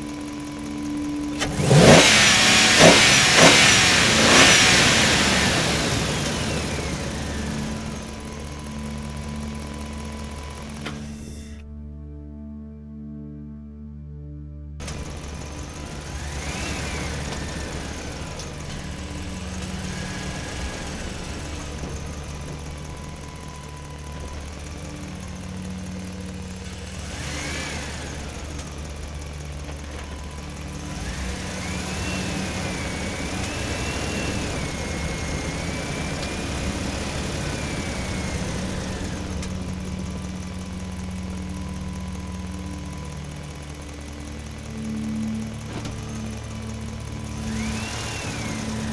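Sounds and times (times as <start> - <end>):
high hydraulic whine: 0.0 - 11.8, 14.8 - 48.9
excavator diesel engine running: 0.0 - 12.3, 14.8 - 48.9.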